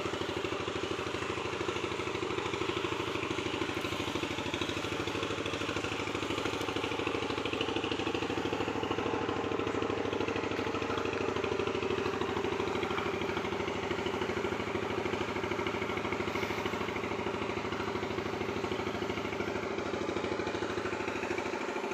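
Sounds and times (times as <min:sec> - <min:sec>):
engine running: 0:00.0 - 0:21.9.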